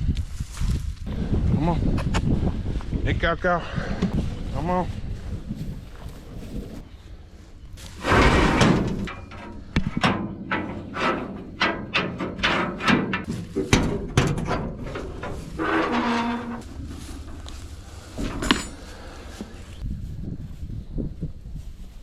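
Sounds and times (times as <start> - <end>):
sharp knocks and clatters: 8.0 - 17.6.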